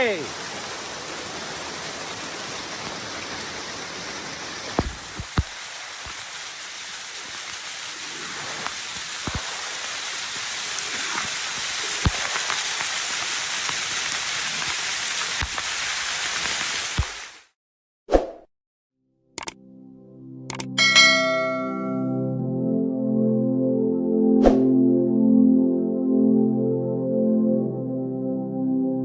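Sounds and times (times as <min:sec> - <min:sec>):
waterfall rushing: 0:00.0 - 0:17.2.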